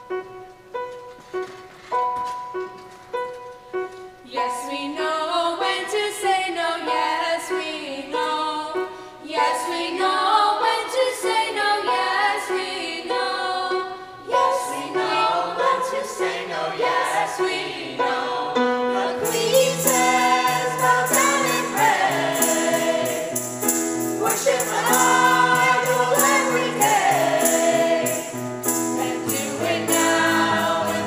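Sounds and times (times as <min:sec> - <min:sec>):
choir singing: 0:04.4 - 0:31.0
instrumental accompaniment: 0:14.7 - 0:31.0
high percussive shimmer: 0:19.2 - 0:31.0.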